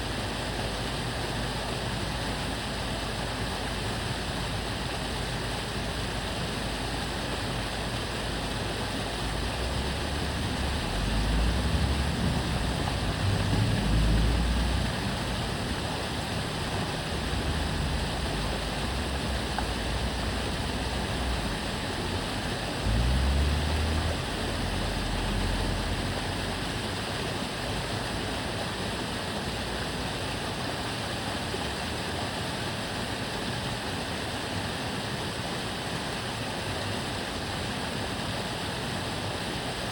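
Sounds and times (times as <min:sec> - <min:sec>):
water rushing along canal: 0:00.0 - 0:39.9
passing cars rumbling: 0:04.0 - 0:30.0.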